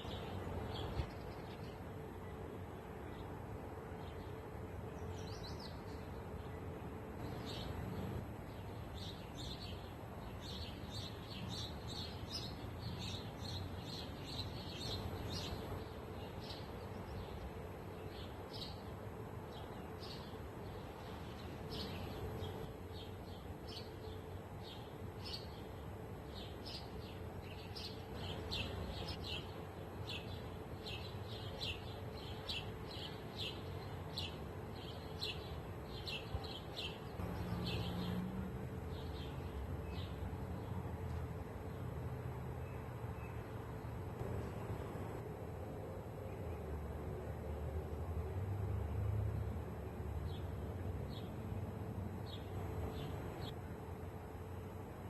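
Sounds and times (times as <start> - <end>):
low rush of wind: 0.0 - 55.0
small birds chirping: 7.2 - 18.9, 19.5 - 41.8.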